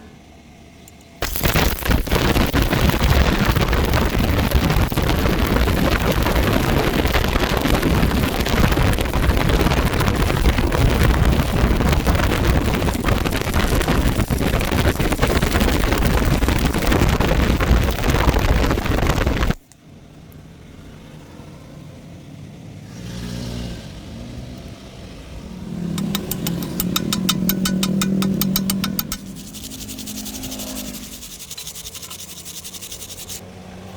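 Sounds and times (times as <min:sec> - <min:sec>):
fast regular ticking: 0:01.2 - 0:19.6, 0:26.0 - 0:33.4
welding arc crackling: 0:01.2 - 0:19.6, 0:26.0 - 0:33.4.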